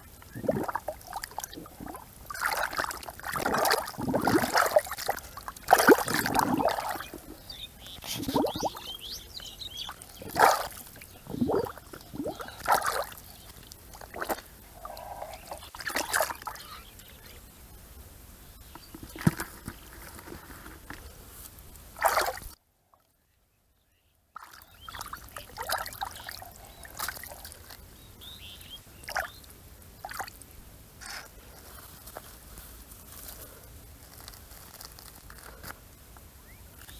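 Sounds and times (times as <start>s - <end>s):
water splashing and sloshing: 0.0s - 16.8s, 18.8s - 21.1s, 22.0s - 22.6s, 24.4s - 27.8s, 30.0s - 30.4s.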